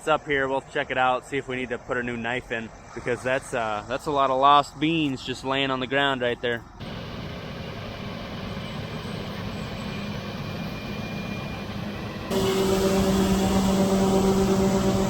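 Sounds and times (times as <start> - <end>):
combine engine droning: 6.8 - 15.0.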